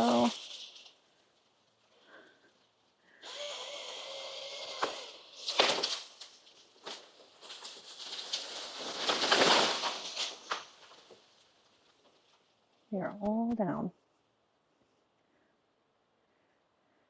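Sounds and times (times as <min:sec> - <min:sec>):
trees crashing down: 0:00.0 - 0:12.8
steady hiss: 0:00.0 - 0:13.0
tree cracking and snapping: 0:03.3 - 0:12.6.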